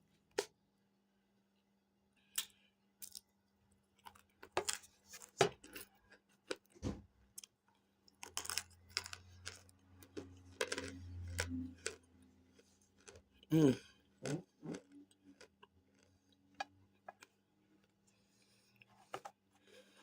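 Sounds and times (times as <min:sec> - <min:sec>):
crunchy chewing: 0:07.4 - 0:18.0.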